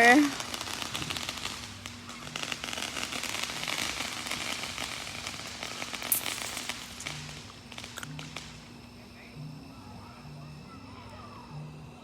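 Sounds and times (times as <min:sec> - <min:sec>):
fireworks crackling: 0:00.0 - 0:11.2
sharp firework pop: 0:05.6 - 0:08.5.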